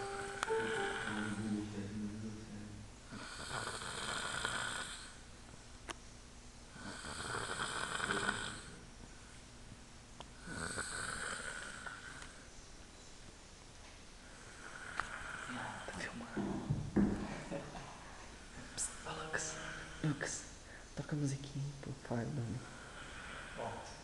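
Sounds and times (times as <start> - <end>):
man snoring: 0.0 - 1.6, 3.1 - 5.2, 6.7 - 8.8, 10.4 - 12.2, 14.4 - 15.9, 22.6 - 23.9.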